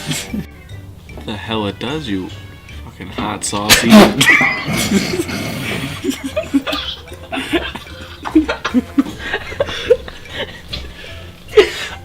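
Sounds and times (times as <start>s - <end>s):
person chuckling: 4.5s - 12.0s.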